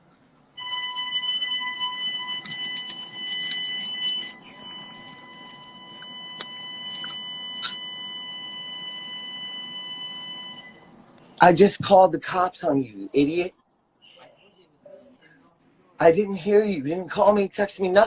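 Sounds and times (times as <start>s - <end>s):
high-pitched alarm tone: 0.6s - 10.8s.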